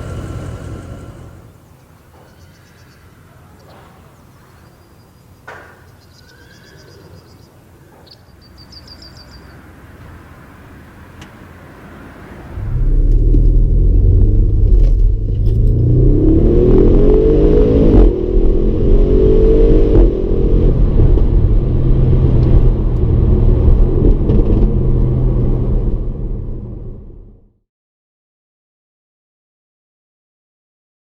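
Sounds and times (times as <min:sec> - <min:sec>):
car engine rumbling under load: 0:00.0 - 0:02.2, 0:08.0 - 0:27.5.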